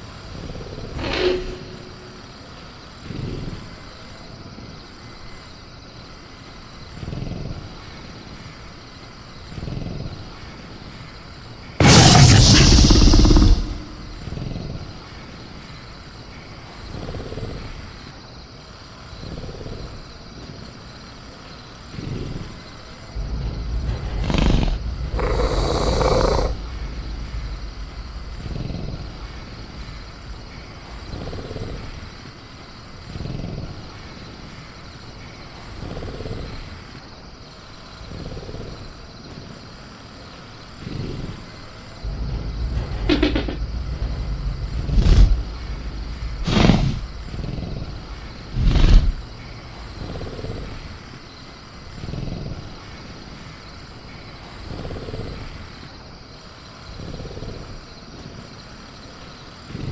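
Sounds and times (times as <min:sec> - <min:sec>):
cricket chorus: 0:00.0 - 0:59.9
creature growling: 0:11.8 - 0:14.6, 0:23.2 - 0:29.5, 0:42.0 - 0:49.2
deep rumble: 0:11.8 - 0:15.1, 0:23.1 - 0:34.0, 0:41.9 - 0:51.1.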